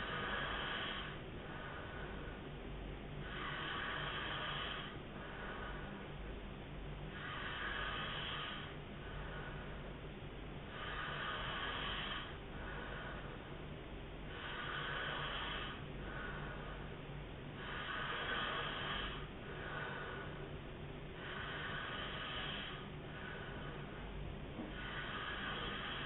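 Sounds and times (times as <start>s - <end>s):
man snoring: 0.0s - 2.2s, 3.2s - 5.9s, 7.1s - 9.5s, 10.7s - 13.2s, 14.3s - 16.8s, 17.6s - 20.4s, 21.2s - 23.8s, 24.6s - 26.0s.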